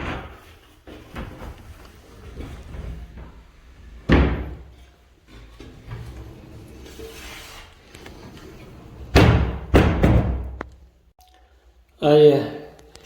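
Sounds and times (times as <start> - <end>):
sliding door on its track: 1.0 - 9.8
door banging against frame: 4.1 - 4.7, 9.1 - 10.6.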